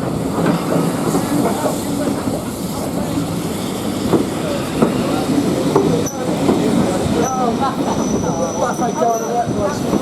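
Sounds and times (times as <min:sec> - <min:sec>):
train wheels rattling on rails: 0:00.0 - 0:10.0.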